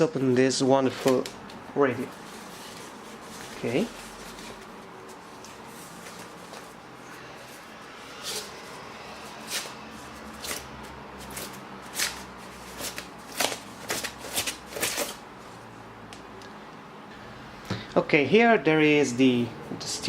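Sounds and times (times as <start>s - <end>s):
plastic wrapping rustling: 0.8s - 15.2s
polystyrene packing scraping: 2.2s - 6.4s.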